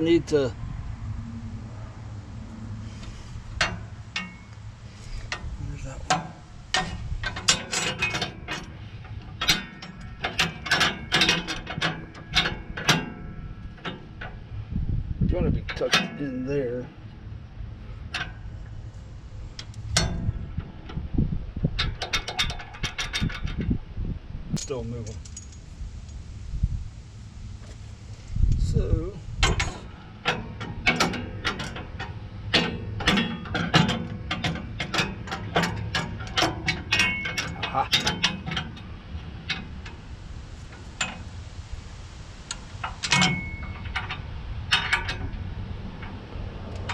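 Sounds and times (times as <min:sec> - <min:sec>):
steady low hum: 0:00.0 - 0:46.9
metal tools clicking and clacking: 0:03.0 - 0:14.4, 0:29.4 - 0:40.0, 0:42.8 - 0:45.4.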